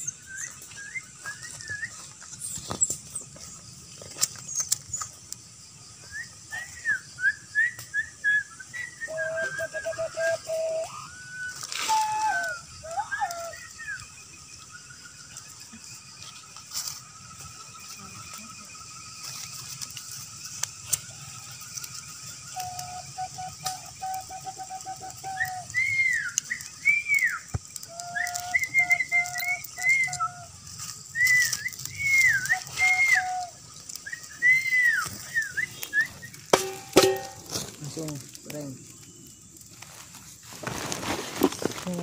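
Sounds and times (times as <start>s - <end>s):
person whistling short notes: 11.4s - 13.4s, 31.2s - 33.5s.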